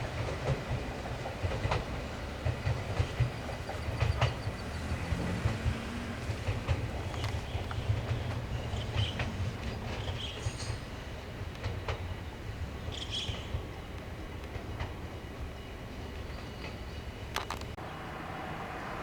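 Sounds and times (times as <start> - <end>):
wheels clicking over rail joints: 0.0 - 12.2, 16.1 - 17.8
train rumbling past: 0.0 - 19.0.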